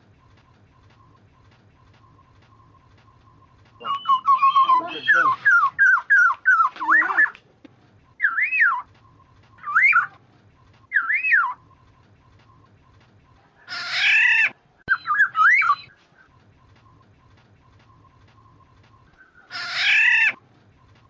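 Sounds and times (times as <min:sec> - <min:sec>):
oriole fluty whistling: 0:02.1 - 0:07.4, 0:08.2 - 0:10.2, 0:10.9 - 0:11.7, 0:14.9 - 0:16.0
harsh nasal bird call: 0:03.8 - 0:07.3.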